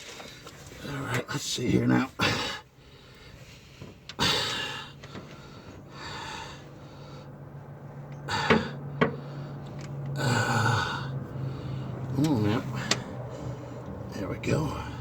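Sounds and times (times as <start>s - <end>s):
man breathing hard: 2.2s - 14.1s.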